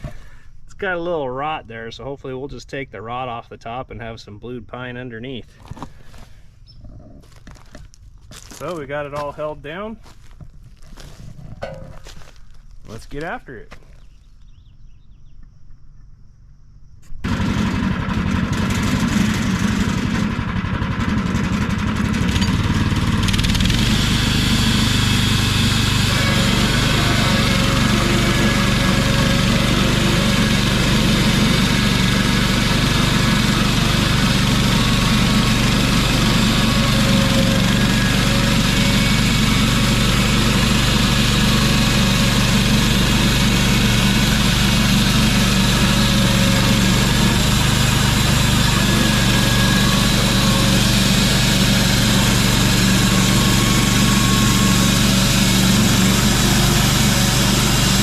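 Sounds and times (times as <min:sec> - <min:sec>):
gasoline engine running: 0:17.2 - 0:58.0
sawmill sawing a log: 0:17.2 - 0:58.0.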